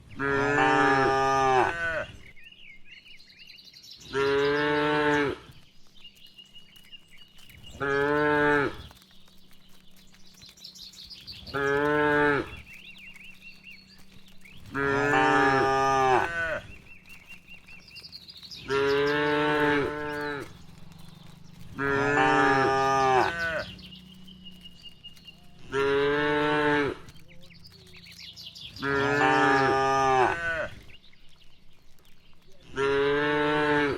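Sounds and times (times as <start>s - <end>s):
cattle mooing: 0.2s - 2.1s, 14.7s - 16.6s, 18.7s - 20.6s, 21.7s - 23.8s, 28.8s - 30.7s.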